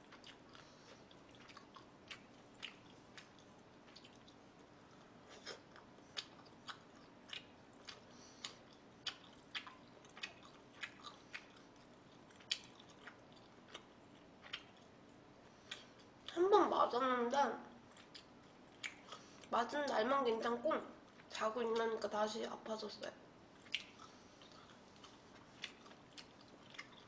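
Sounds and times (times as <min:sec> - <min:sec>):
chewing with wet mouth smacks: 0:00.1 - 0:16.4, 0:17.9 - 0:19.5, 0:23.6 - 0:27.0.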